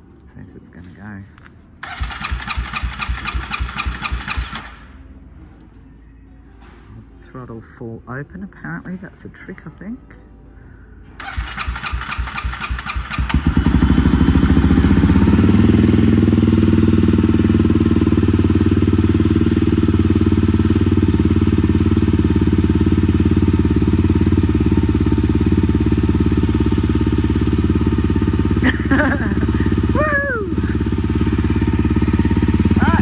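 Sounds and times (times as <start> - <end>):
motorcycle engine starting and idling: 1.8 - 5.2, 11.2 - 33.0.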